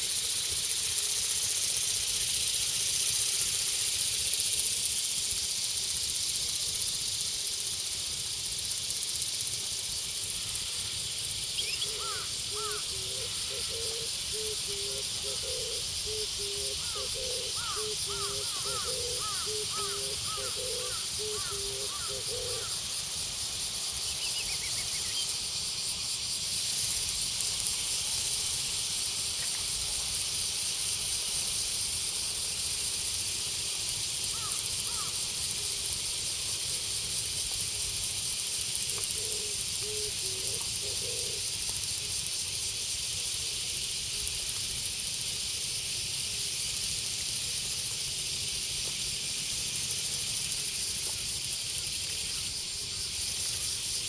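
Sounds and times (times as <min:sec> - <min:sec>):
high-pitched outdoor hiss: 0:00.0 - 0:54.0
bird calls: 0:11.6 - 0:22.7.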